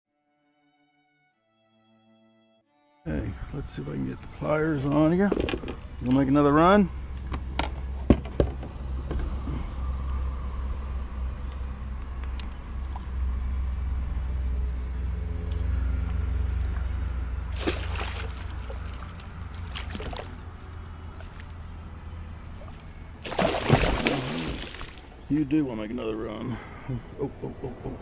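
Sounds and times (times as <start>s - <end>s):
fish splashing in water: 17.5s - 20.4s, 22.5s - 25.3s.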